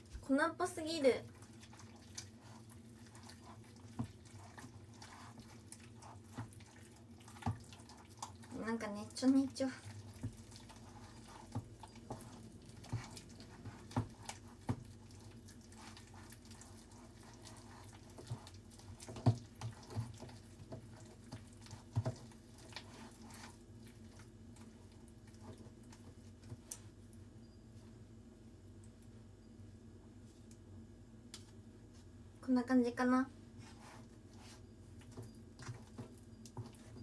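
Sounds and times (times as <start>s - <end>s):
hands kneading dough: 0.0s - 37.0s.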